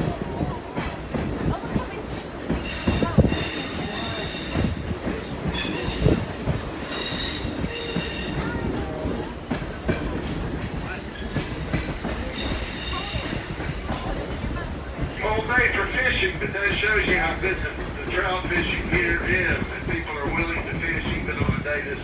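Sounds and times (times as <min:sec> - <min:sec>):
train wheels rumbling on rails: 0:00.0 - 0:22.0
high-pitched wheel squeal: 0:05.6 - 0:08.6.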